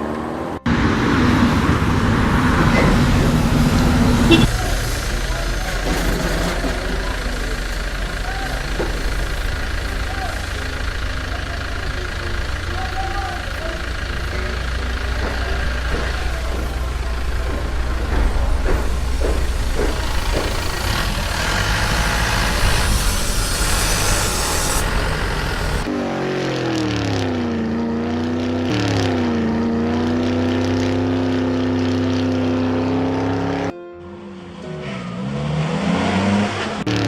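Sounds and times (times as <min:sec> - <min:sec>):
cartoon truck engine rumbling: 0:00.0 - 0:37.0
engine tone rising and dropping: 0:00.0 - 0:37.0.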